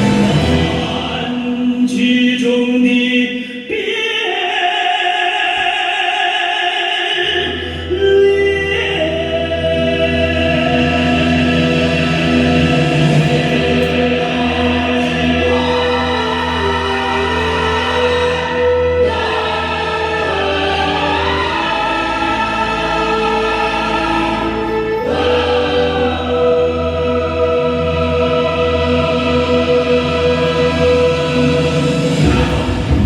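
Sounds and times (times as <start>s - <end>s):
choir-like singing: 0.0s - 7.5s, 8.4s - 33.0s
pulsing bass line: 9.6s - 33.0s.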